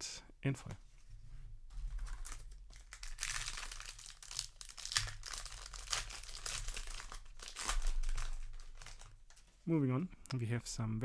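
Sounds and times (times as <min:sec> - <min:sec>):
foil wrapper crinkling and tearing: 0:01.9 - 0:09.4.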